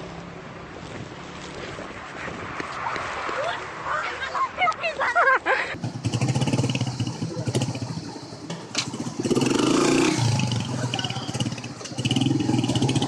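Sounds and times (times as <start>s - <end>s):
vehicle engine revving: 5.8s - 13.0s.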